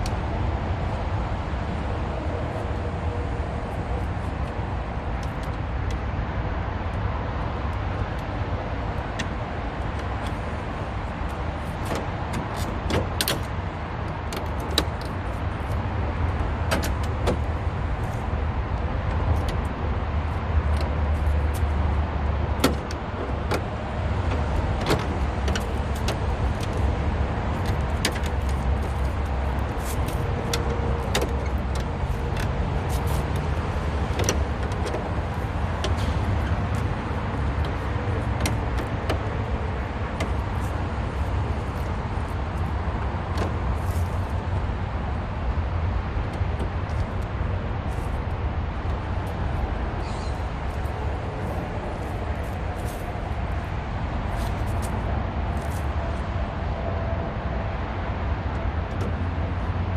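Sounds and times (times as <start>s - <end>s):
steady low rumble: 0.0s - 59.9s
sharp clicks and knocks: 11.2s - 18.2s, 20.6s - 44.6s.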